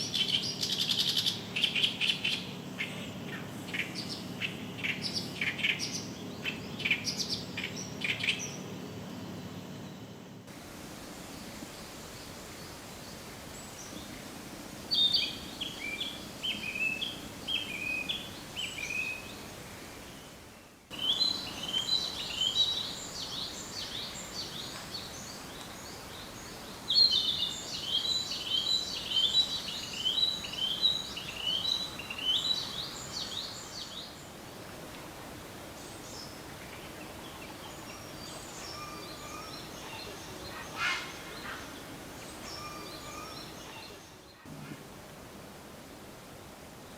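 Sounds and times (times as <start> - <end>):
faint bird calls: 36.2 - 44.9
warbler grating chatter: 37.5 - 41.8.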